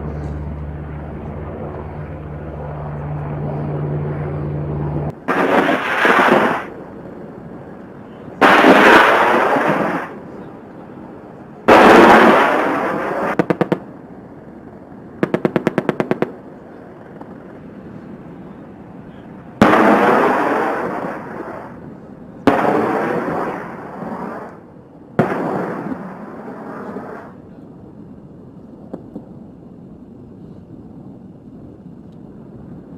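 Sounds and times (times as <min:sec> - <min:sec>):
loud gun blasts: 0:05.3 - 0:06.7, 0:08.4 - 0:10.2, 0:11.7 - 0:13.9, 0:15.2 - 0:16.4, 0:19.6 - 0:21.6, 0:22.5 - 0:24.1, 0:25.2 - 0:26.2.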